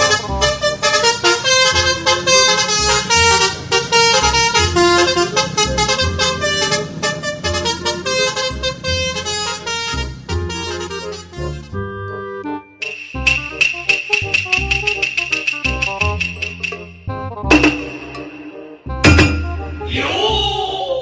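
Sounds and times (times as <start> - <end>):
multi-tone musical air horn: 0.0 - 16.7.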